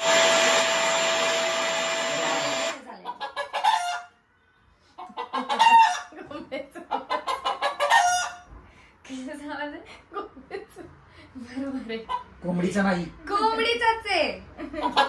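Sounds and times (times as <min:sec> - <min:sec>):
machine whirring: 0:00.0 - 0:02.8
hen clucking through speaker: 0:02.9 - 0:04.1, 0:05.0 - 0:08.4.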